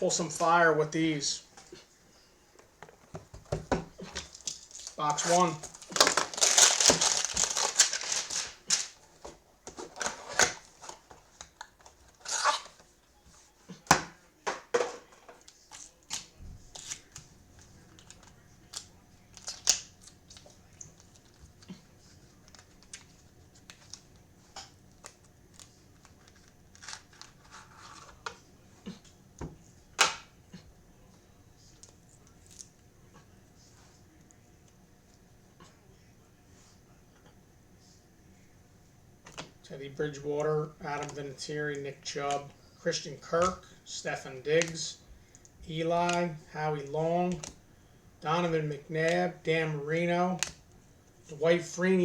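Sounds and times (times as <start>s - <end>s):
packaging rustling and crinkling: 4.0s - 12.8s, 24.9s - 28.2s.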